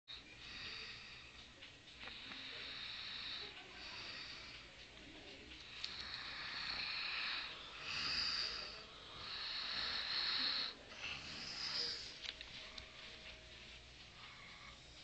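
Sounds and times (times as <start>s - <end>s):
pet snoring: 5.7s - 13.2s.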